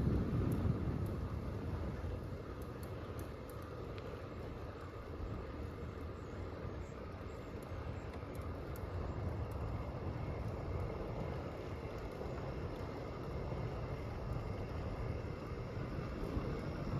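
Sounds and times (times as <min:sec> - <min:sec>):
wind rumble on microphone: 0:00.0 - 0:16.9.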